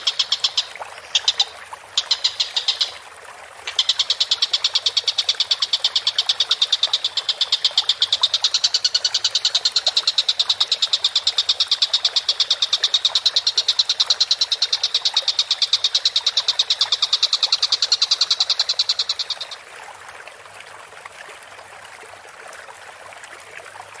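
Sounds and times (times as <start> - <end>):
kingfisher rattling call: 0.0 - 3.0, 3.7 - 19.6.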